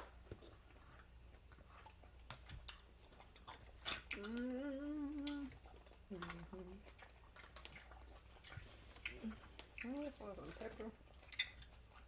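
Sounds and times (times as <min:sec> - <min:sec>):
chewing with mouth clicks: 0:00.0 - 0:12.0
person humming: 0:04.1 - 0:05.5.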